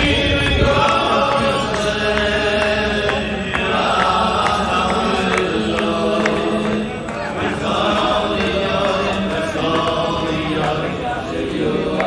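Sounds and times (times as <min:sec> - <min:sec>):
steady ticking beat: 0:00.0 - 0:10.9
voices singing chant-like melody: 0:00.0 - 0:12.0.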